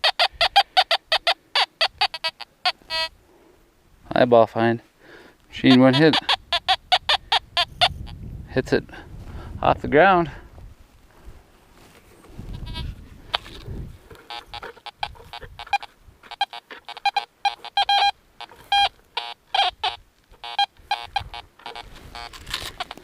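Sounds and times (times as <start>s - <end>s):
metal detector beeps: 0.0s - 3.1s, 5.6s - 8.1s, 12.6s - 23.0s.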